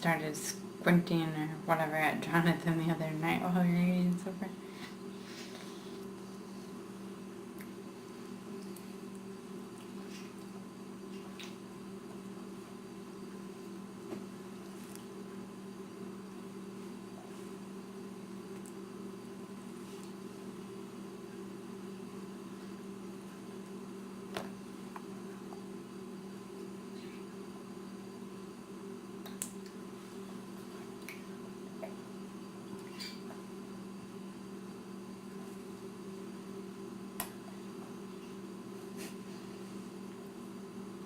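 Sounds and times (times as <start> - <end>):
low background hum: 0.0 - 41.0.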